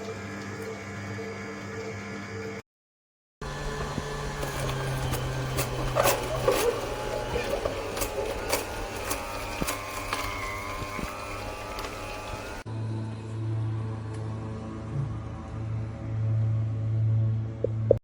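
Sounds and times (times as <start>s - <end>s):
juicer motor hum: 0.0s - 2.6s, 3.4s - 12.7s.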